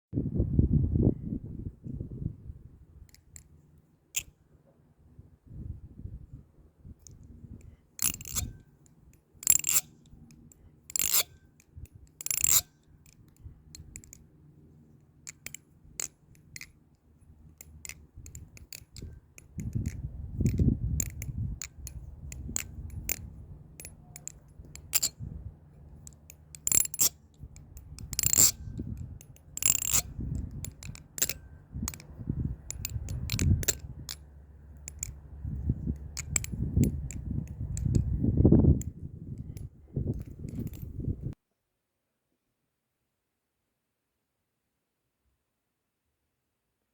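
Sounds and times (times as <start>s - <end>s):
butterfly knife metallic clacks: 7.0s - 14.3s, 15.2s - 41.0s
light clicks and rattles: 15.0s - 41.4s.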